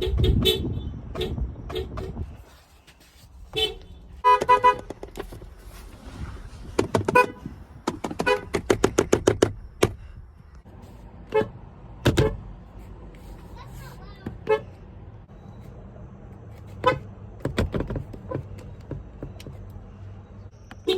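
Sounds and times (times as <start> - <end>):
car horn toots: 0.0 - 2.2, 3.5 - 4.9, 7.1 - 7.5, 8.2 - 8.6, 16.8 - 17.1.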